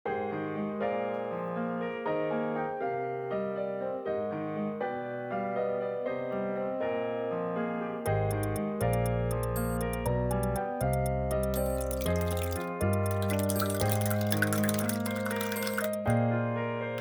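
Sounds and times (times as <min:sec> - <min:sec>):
piano-like keyboard melody: 0:00.1 - 0:17.0
bass line: 0:08.1 - 0:14.2
light ticking percussion: 0:08.1 - 0:16.2.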